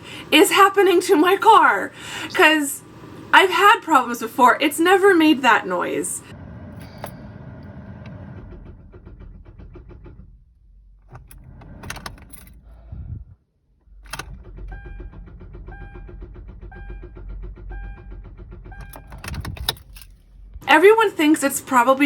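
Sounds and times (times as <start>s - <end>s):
car starter clicking: 6.5s - 12.8s, 13.8s - 21.1s
dashboard warning chime: 14.4s - 20.1s.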